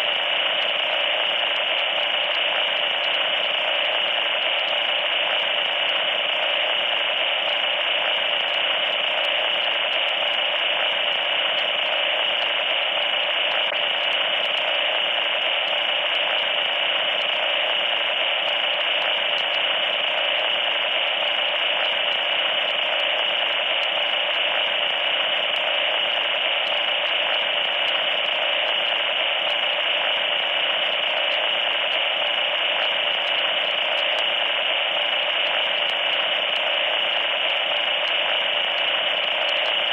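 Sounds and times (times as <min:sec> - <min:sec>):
static hiss: 0:00.0 - 0:39.9.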